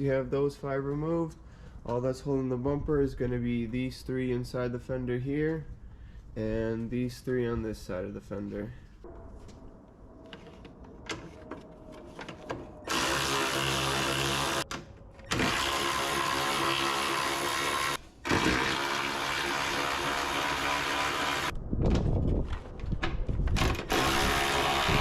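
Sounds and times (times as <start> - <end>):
power driver whirring: 12.8 - 21.5, 23.6 - 25.0.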